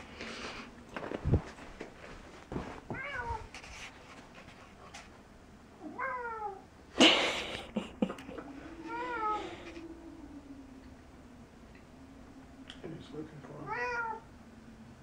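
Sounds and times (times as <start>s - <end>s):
cat meowing: 3.0s - 3.5s, 5.8s - 6.6s, 8.6s - 10.7s, 13.6s - 14.3s.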